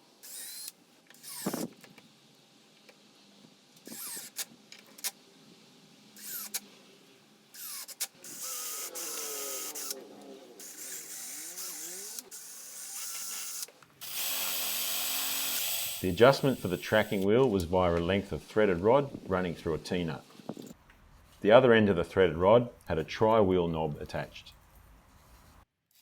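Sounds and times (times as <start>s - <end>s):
power drill running: 10.6s - 17.2s.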